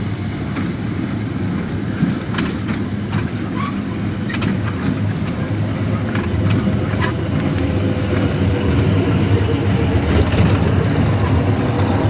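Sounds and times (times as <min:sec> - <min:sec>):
train rumbling: 0:00.0 - 0:12.0.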